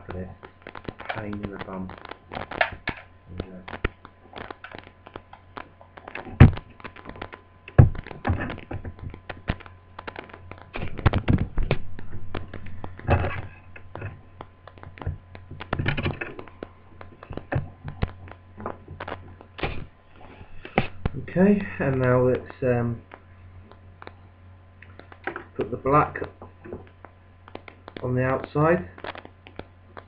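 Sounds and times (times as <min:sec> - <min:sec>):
sharp thunks: 0:06.3 - 0:06.7, 0:07.7 - 0:09.1.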